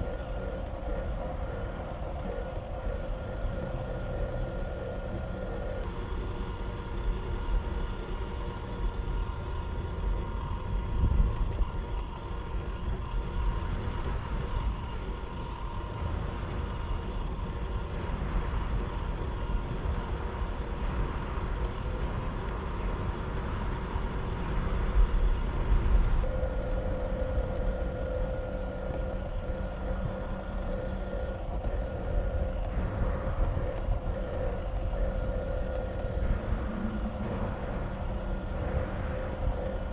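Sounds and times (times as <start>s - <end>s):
low rumbling: 0.0s - 39.9s.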